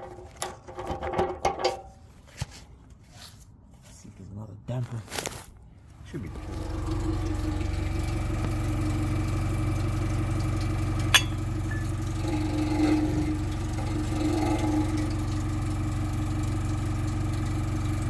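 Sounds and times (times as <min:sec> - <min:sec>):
car engine idling: 0:06.0 - 0:18.0.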